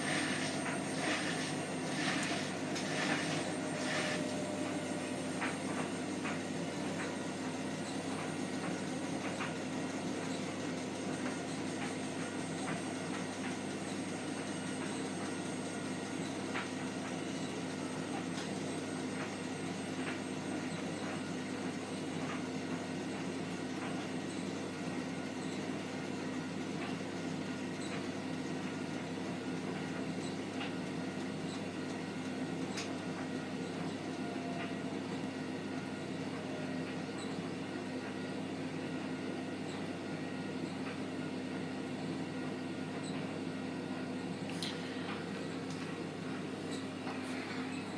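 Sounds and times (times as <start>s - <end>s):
washing machine drum spinning: 0.0s - 20.7s.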